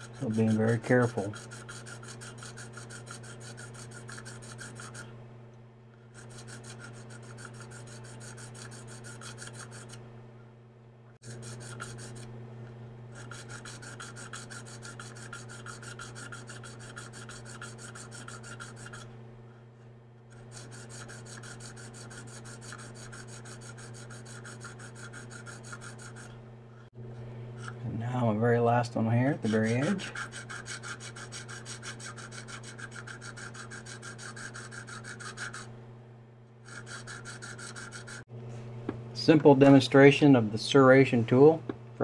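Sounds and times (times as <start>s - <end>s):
sharpening rod rasping on knife: 0.0s - 5.1s, 6.2s - 10.0s, 11.2s - 12.3s, 13.2s - 19.1s, 20.4s - 26.3s, 29.4s - 35.7s, 36.7s - 38.2s.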